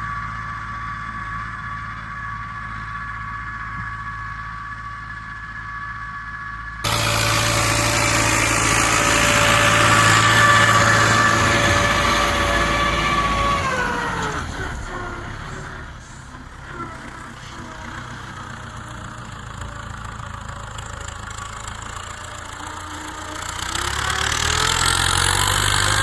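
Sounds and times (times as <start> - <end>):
tractor diesel engine running: 0.0 - 26.0.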